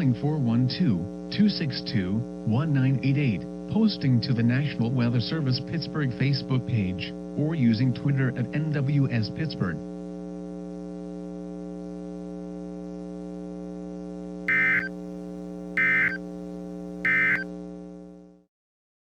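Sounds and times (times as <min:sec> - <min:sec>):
steady electrical hum: 0:00.0 - 0:18.5
short digital data bursts: 0:14.5 - 0:14.9, 0:15.8 - 0:16.2, 0:17.1 - 0:17.4.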